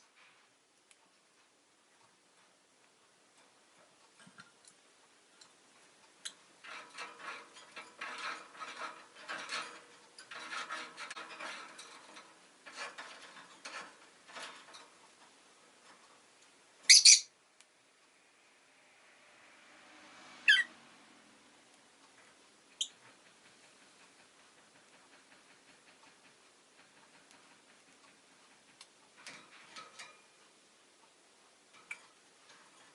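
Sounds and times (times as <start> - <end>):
dry rustling and scraping: 6.6 - 16.6.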